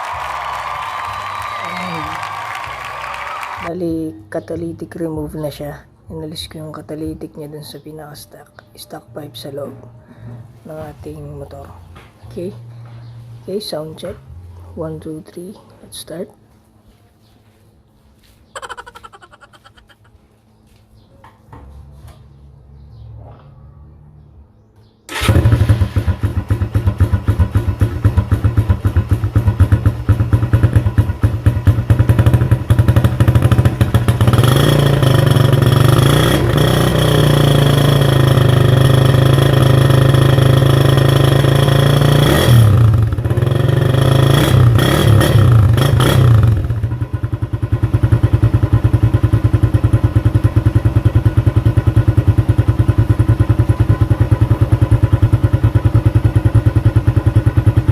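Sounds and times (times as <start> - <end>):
motorcycle engine idling and revving: 25.1 - 57.9.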